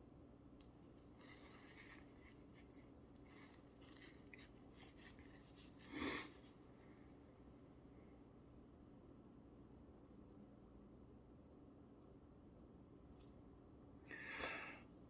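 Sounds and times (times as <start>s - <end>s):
breathing: 14.0s - 14.9s.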